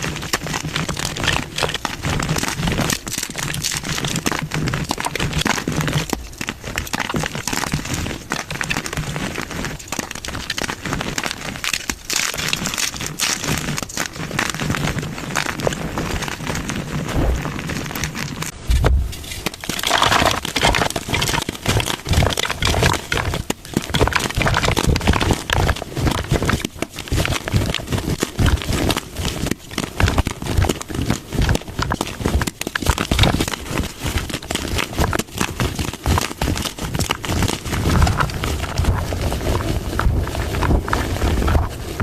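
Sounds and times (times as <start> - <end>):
chalk blocks being crushed: 17.6 - 42.0.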